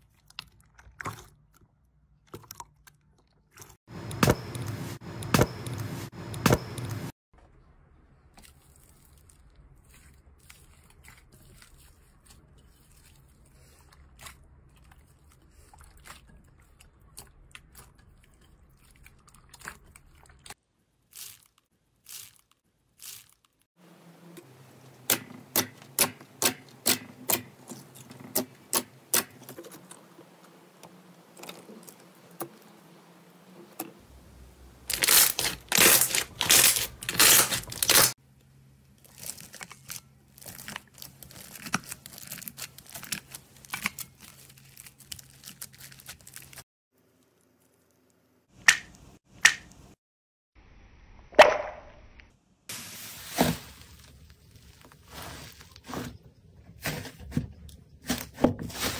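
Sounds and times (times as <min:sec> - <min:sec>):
crunchy slime crackling: 0:21.0 - 0:23.7, 0:34.8 - 0:38.2, 0:38.8 - 0:46.6.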